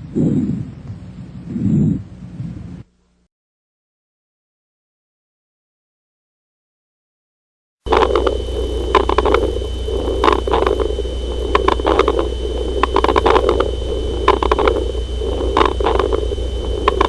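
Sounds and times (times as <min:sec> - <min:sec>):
breath sounds through stethoscope: 0:00.0 - 0:00.8, 0:01.4 - 0:02.8
steady hum: 0:00.0 - 0:03.3, 0:07.8 - 0:17.0.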